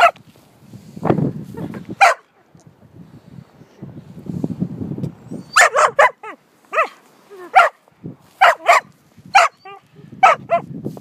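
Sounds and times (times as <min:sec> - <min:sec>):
puppy barking: 0:02.0 - 0:02.3, 0:05.5 - 0:07.8, 0:08.4 - 0:10.7.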